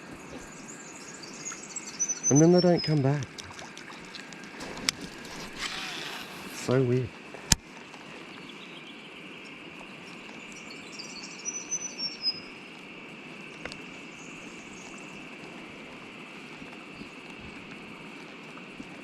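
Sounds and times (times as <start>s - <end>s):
bird chirps: 0.5s - 3.0s, 10.6s - 12.5s.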